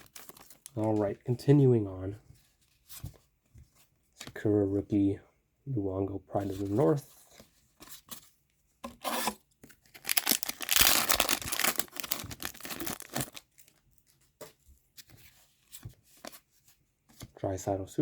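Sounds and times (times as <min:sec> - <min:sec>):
wrapper tearing and crinkling: 0:00.0 - 0:00.8, 0:09.9 - 0:13.8
cards rustling: 0:00.0 - 0:01.2, 0:09.8 - 0:16.5.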